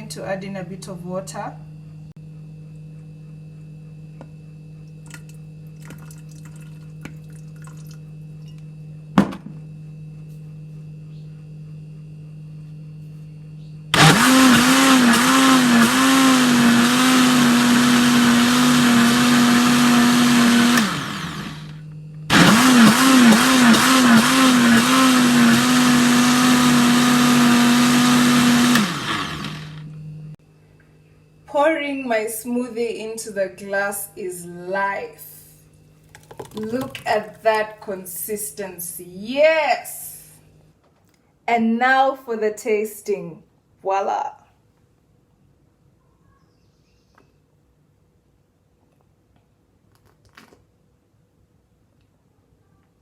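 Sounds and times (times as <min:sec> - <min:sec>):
electric blender whine: 0:13.9 - 0:30.4.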